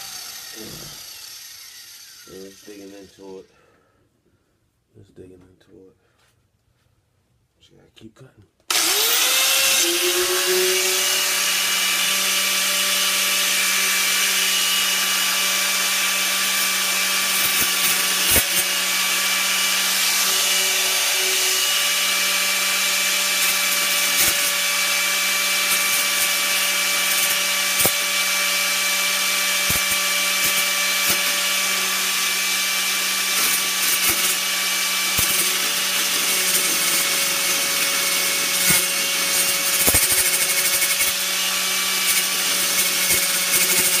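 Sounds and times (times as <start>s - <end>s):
angle grinder cutting steel: 0.0s - 3.4s, 8.7s - 44.0s.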